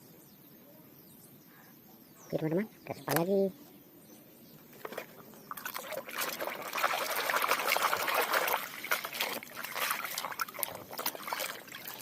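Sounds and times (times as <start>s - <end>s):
water trickling and splashing: 4.8s - 12.0s.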